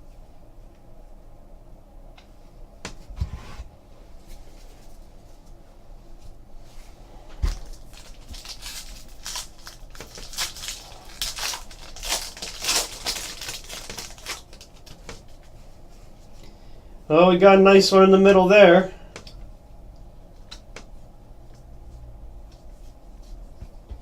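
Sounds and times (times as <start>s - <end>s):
cards being riffled: 7.5s - 15.4s
wrapper crinkling: 7.5s - 15.4s.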